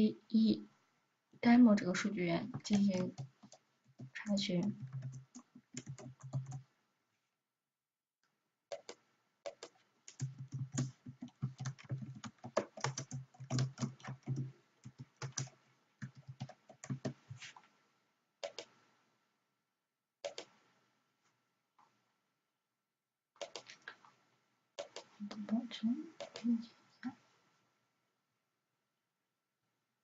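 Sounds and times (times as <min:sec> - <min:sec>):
typing on computer keyboard: 0:02.5 - 0:06.6, 0:08.7 - 0:17.4, 0:18.4 - 0:18.7, 0:20.2 - 0:20.5, 0:23.4 - 0:23.8, 0:24.8 - 0:25.4, 0:26.2 - 0:26.5.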